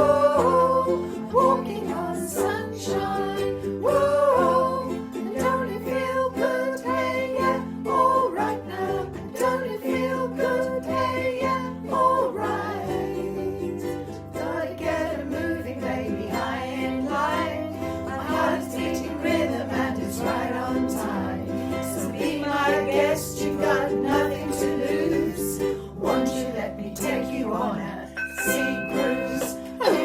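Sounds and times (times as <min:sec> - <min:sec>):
strummed ukulele: 0:00.0 - 0:30.0
gliding melody line: 0:28.1 - 0:30.0.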